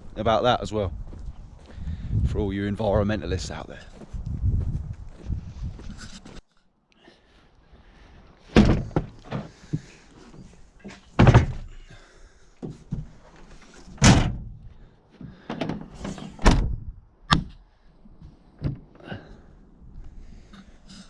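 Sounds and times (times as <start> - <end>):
heavy thumps and knocks: 8.5 - 9.9, 10.9 - 11.8, 12.6 - 13.2.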